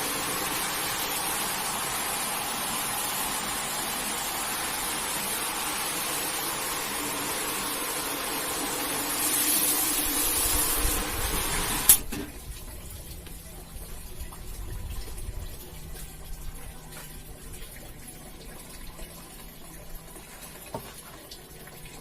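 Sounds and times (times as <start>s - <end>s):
water spraying on carpet: 0.0s - 12.0s.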